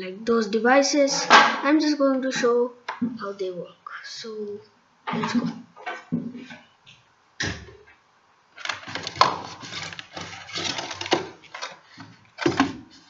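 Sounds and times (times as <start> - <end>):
objects rustling and knocking: 1.0 - 1.7, 5.1 - 8.0, 8.6 - 13.0.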